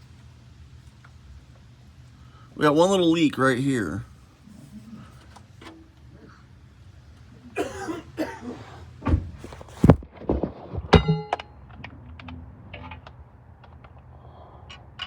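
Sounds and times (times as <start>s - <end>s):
knocks and thuds: 9.0s - 11.4s
ringing metallic clank: 11.0s - 11.6s.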